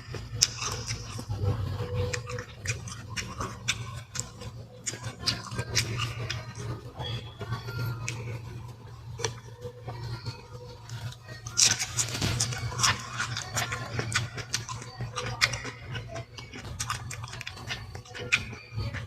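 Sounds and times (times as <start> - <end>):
fruit being bitten and chewed: 0.0 - 7.2, 10.9 - 19.0
steady low hum: 0.0 - 19.0.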